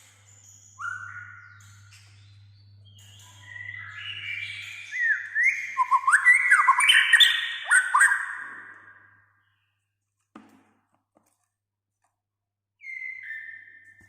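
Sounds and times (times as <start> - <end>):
bird singing whistles: 0.3 - 9.0, 12.8 - 14.0.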